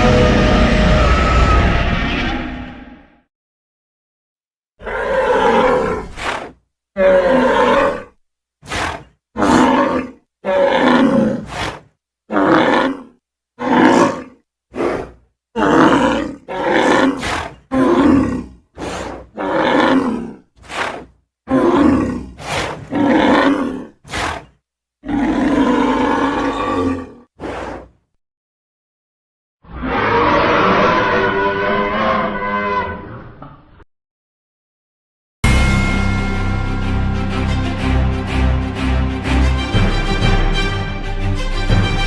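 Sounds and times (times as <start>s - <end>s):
dinosaur roars and growls: 0.0s - 3.2s, 4.8s - 28.0s, 29.6s - 33.8s.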